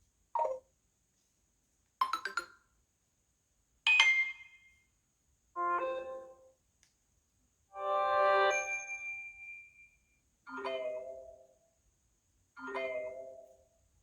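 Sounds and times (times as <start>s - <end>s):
soft chord-like chime: 7.9s - 10.0s
bright chime: 8.2s - 10.0s.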